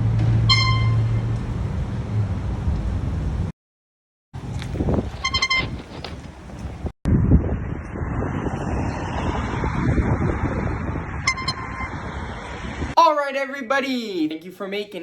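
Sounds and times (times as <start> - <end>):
street traffic noise: 0.0 - 3.5, 4.4 - 13.0
wind noise: 4.4 - 13.0.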